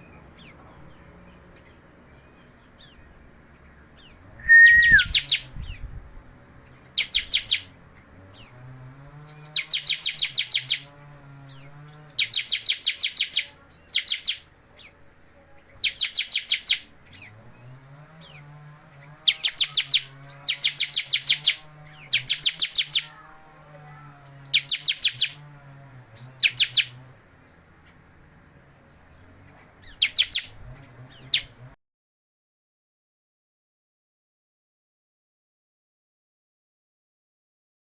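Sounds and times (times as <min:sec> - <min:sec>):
bird singing rapid high chirps: 0:00.1 - 0:08.6, 0:09.3 - 0:10.9, 0:11.5 - 0:23.2, 0:24.3 - 0:25.4, 0:26.2 - 0:31.6.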